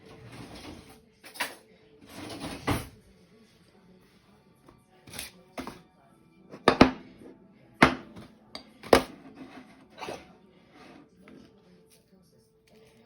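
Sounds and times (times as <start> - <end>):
kitchen utensils clattering: 0.0 - 3.0
faint background music: 0.0 - 13.0.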